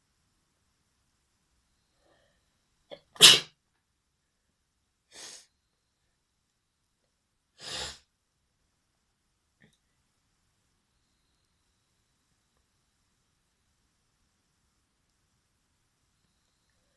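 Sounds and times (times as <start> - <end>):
person sneezing: 2.9 - 3.5.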